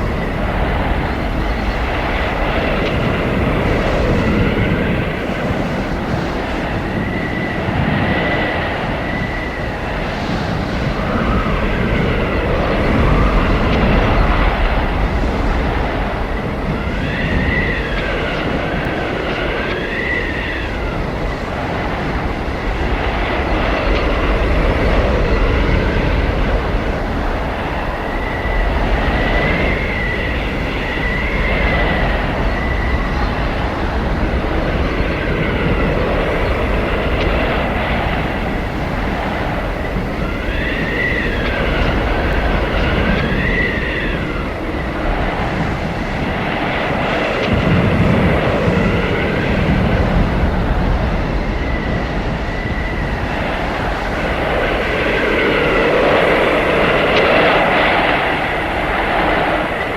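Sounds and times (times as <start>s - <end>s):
blizzard wind howling: 0.0s - 59.9s.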